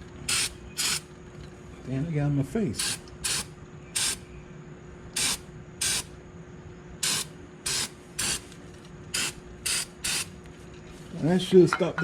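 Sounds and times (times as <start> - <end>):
aerosol spray can spraying: 7.0 - 8.4.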